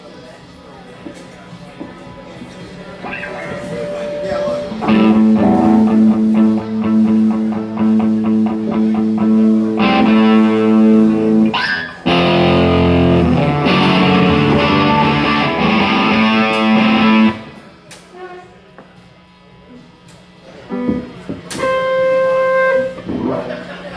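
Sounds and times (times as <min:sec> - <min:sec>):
electric guitar repeated notes: 0:03.0 - 0:17.6.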